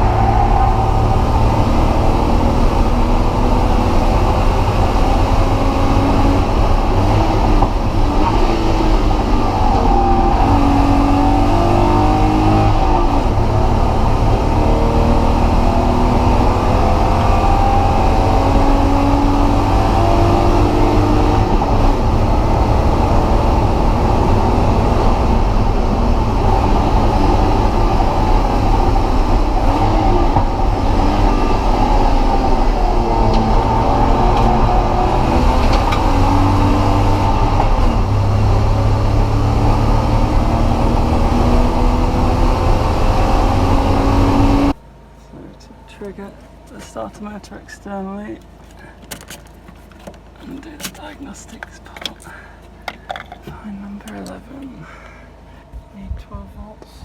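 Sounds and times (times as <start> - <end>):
car engine revving hard: 0.0 - 44.8
road and wind noise: 0.0 - 57.0.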